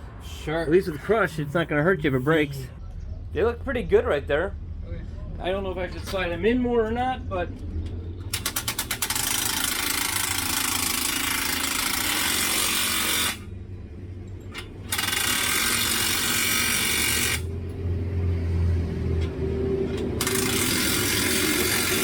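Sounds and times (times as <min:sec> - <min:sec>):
low hum: 0:00.0 - 0:21.8
impact wrench running: 0:08.3 - 0:13.5, 0:14.5 - 0:17.6, 0:19.2 - 0:22.0.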